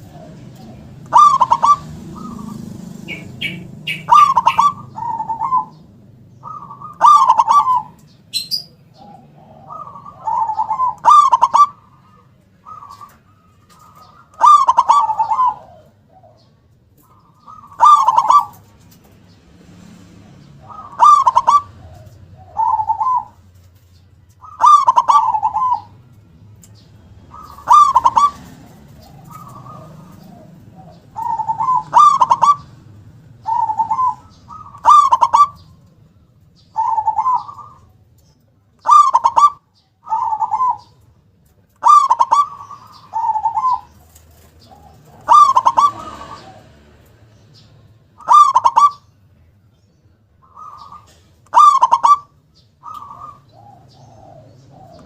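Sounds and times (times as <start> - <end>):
dove cooing: 0.0 - 49.2, 50.4 - 55.0.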